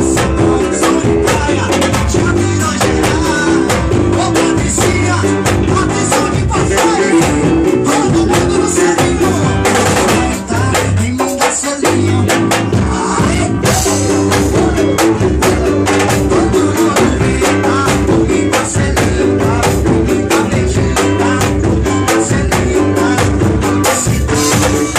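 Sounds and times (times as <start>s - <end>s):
drum kit and percussion beat: 0.0s - 24.9s
repeating bass line: 0.0s - 24.9s.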